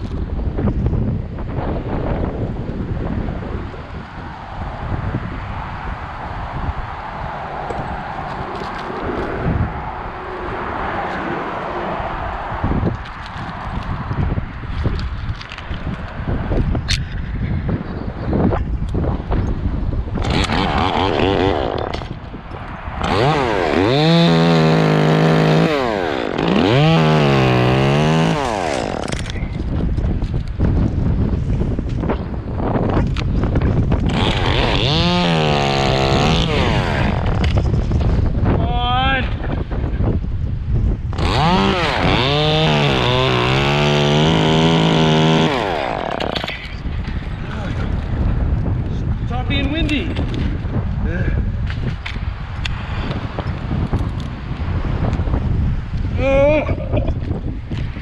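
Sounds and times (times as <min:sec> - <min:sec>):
chainsaw engine revving: 0:20.2 - 0:22.1, 0:23.0 - 0:29.4, 0:34.1 - 0:37.3, 0:41.1 - 0:46.6.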